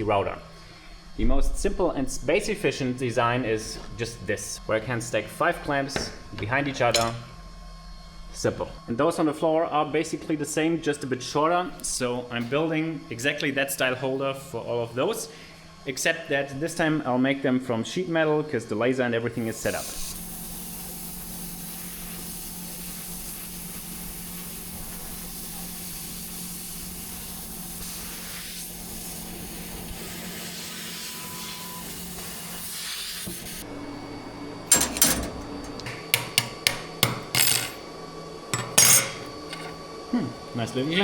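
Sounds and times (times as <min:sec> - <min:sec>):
laser cutter hum and hiss: 0:19.4 - 0:35.8.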